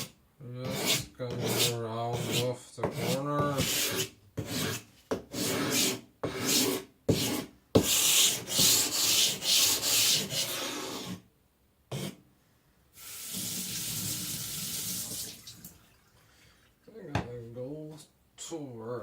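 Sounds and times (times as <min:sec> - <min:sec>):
diamond plate scraping whetstone: 0:00.0 - 0:11.2
running tap water: 0:13.0 - 0:16.4.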